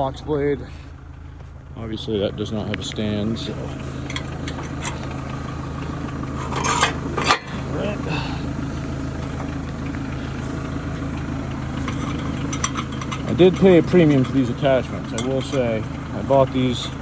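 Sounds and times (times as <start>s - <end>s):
tractor diesel engine idling: 0.0s - 17.0s
metal clanks and clinks: 2.8s - 7.7s, 9.1s - 17.0s.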